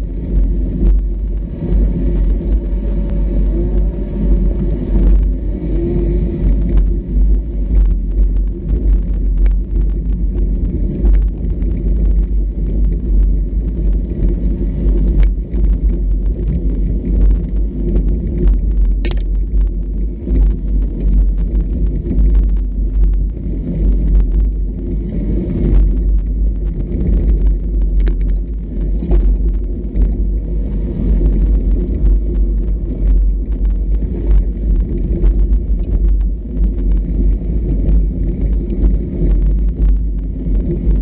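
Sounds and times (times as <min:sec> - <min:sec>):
off-road vehicle engine rumble: 0:00.0 - 0:41.0
knocks and rattles: 0:19.0 - 0:19.4.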